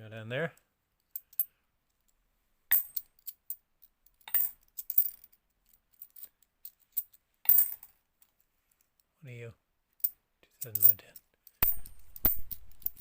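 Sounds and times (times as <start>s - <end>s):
coins clinking: 2.7s - 3.4s, 4.3s - 5.3s, 6.9s - 7.9s, 10.6s - 13.0s.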